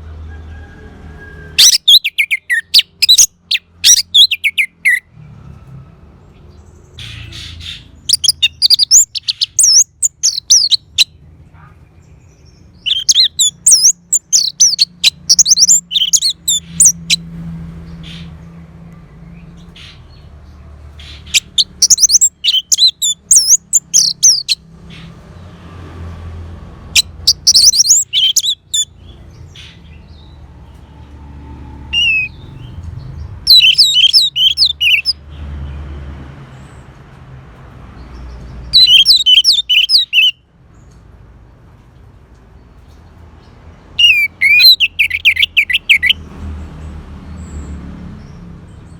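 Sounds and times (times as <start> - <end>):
bird singing: 1.5 - 5.1, 6.2 - 25.4, 27.0 - 35.3, 38.0 - 41.0, 42.6 - 48.9.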